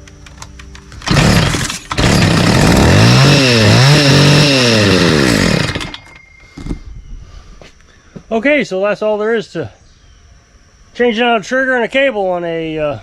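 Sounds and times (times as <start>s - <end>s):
string trimmer engine revving: 1.0s - 6.0s.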